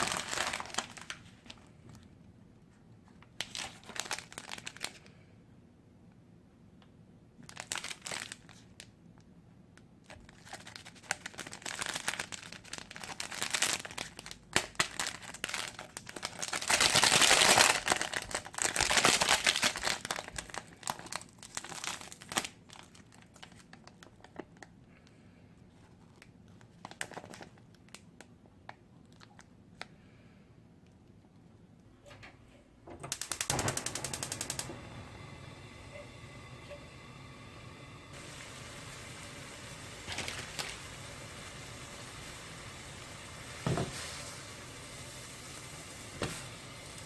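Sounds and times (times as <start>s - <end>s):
plastic packet crinkling and tearing: 0.0s - 2.1s, 3.0s - 5.2s, 7.4s - 8.9s, 10.0s - 24.8s, 25.8s - 29.9s, 33.1s - 34.5s, 38.1s - 44.2s.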